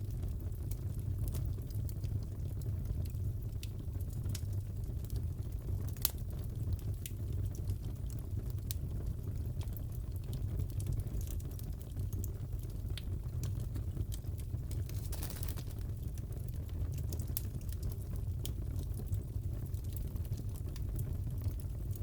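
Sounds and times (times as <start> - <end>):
wood fire crackling: 0.0 - 22.0
pops and snaps of fire: 5.8 - 6.2, 13.0 - 18.8.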